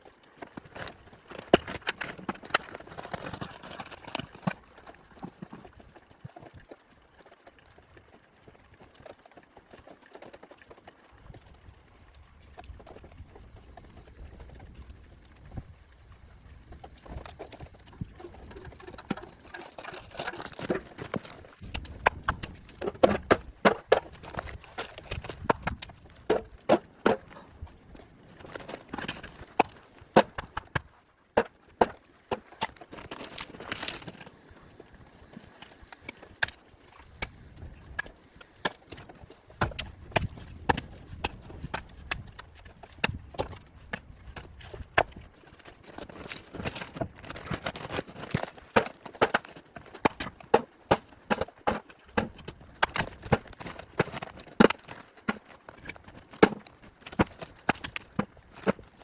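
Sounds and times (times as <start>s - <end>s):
irregular knocking and crunching: 0.2s - 6.8s, 12.2s - 59.0s.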